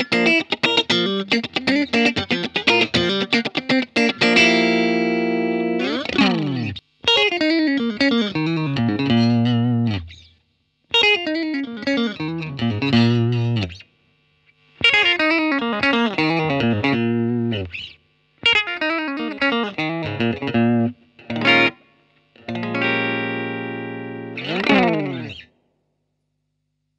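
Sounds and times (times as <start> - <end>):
electric guitar runs: 22.5 - 25.4.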